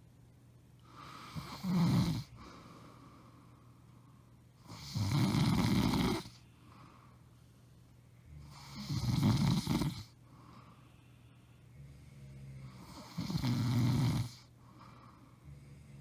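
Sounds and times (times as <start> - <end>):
quiet breathing: 0.7 - 16.0
woman snoring: 0.9 - 2.4, 4.6 - 6.4, 8.3 - 10.2, 11.8 - 14.5.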